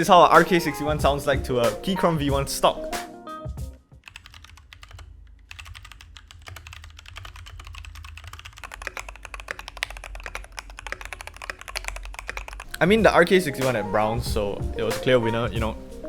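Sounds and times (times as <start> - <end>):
mechanical keyboard typing: 4.0 - 12.9.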